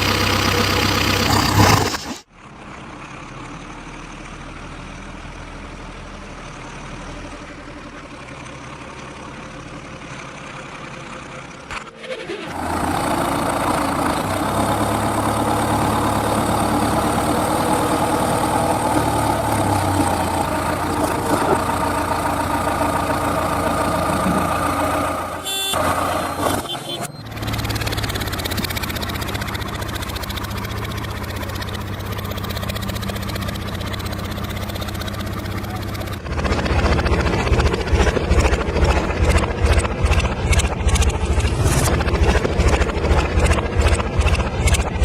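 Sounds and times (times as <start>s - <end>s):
heavy diesel engine running: 0.0s - 45.0s.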